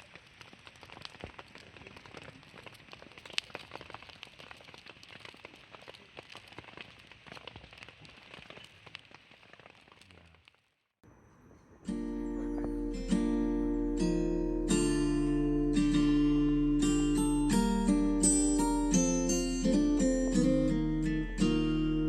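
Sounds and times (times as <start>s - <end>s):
rain patter: 0.0s - 10.7s.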